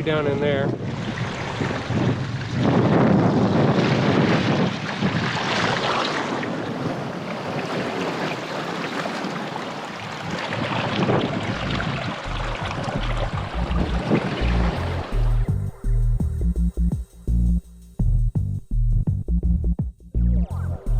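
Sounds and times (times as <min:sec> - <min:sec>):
wind buffeting microphone: 0:00.0 - 0:16.6
small waves washing on rocky shore: 0:00.5 - 0:12.3.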